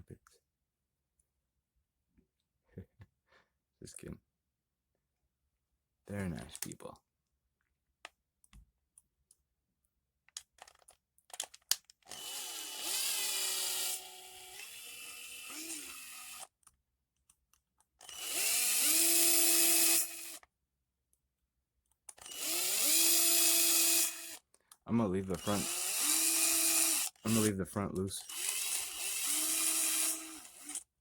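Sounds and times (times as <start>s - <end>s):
parts clicking: 10.3s - 12.2s
cordless drill whine: 12.1s - 16.5s, 18.0s - 20.4s, 22.2s - 24.4s, 25.3s - 27.5s, 28.2s - 30.8s.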